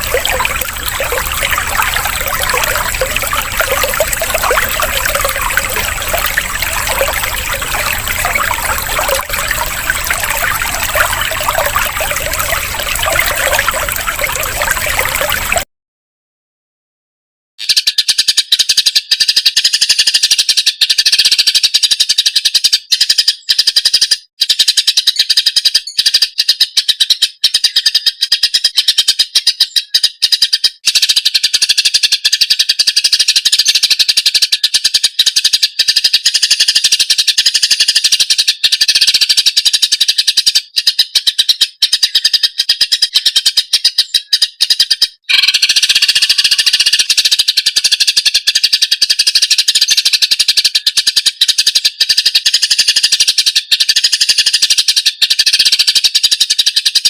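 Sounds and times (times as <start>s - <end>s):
bird rapid chattering song: 17.6s - 57.0s.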